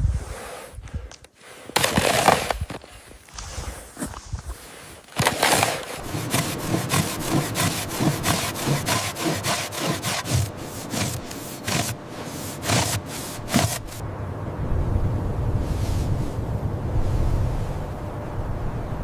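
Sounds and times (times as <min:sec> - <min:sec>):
rhythmic scraping crunches: 0:01.1 - 0:14.0.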